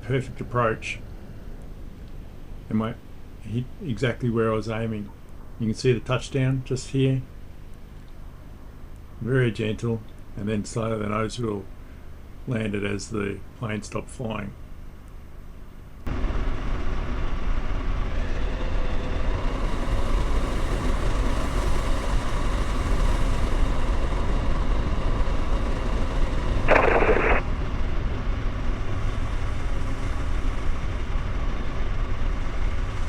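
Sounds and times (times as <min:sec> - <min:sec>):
propeller engine running: 0:16.1 - 0:33.0
wind noise: 0:26.6 - 0:27.5.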